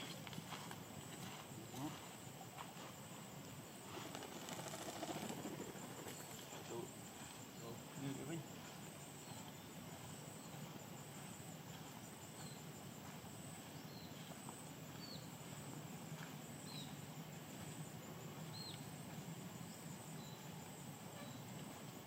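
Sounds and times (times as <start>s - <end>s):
high-pitched insect drone: 3.6s - 19.0s.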